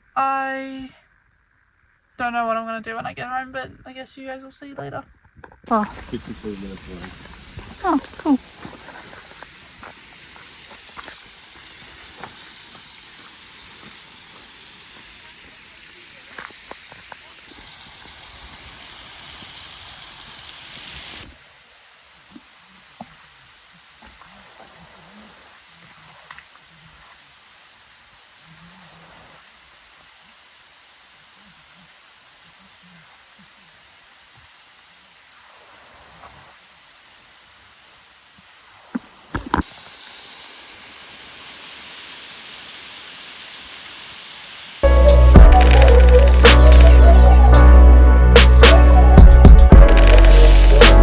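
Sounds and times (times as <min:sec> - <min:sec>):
waterfall rushing: 0:05.7 - 0:21.6, 0:39.6 - 0:51.0.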